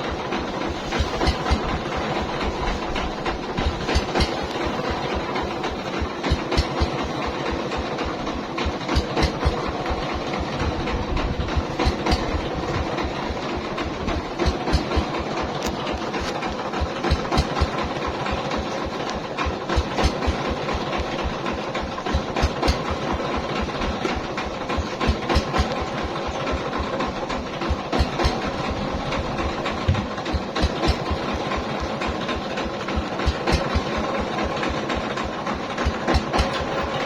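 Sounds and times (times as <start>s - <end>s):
mill rattling clicks: 0.1s - 37.0s
motor thudding: 27.8s - 31.9s.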